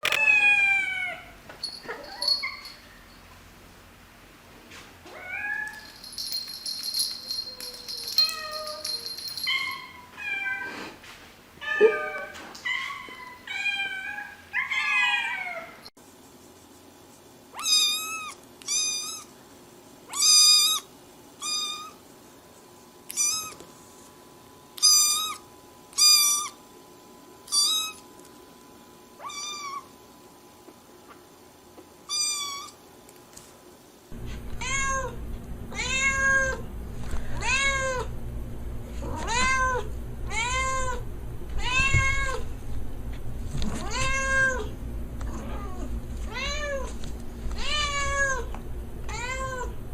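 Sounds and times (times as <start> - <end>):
high-pitched cat mewing: 0.0 - 1.3, 11.6 - 15.8, 39.1 - 41.0
cats meowing: 0.1 - 2.5, 11.6 - 15.8, 34.3 - 36.6, 37.4 - 38.1, 39.0 - 41.0, 41.6 - 42.5, 43.7 - 44.7, 47.6 - 48.5.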